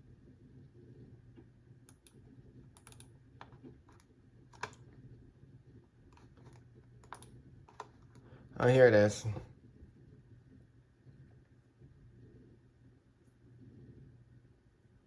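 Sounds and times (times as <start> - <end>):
keyboard and mouse clicks: 1.9 - 4.8, 6.1 - 8.3.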